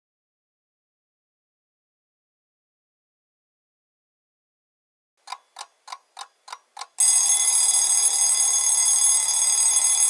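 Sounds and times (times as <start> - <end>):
timer ticking: 5.2 - 10.0
alarm clock bell ringing: 7.0 - 10.0.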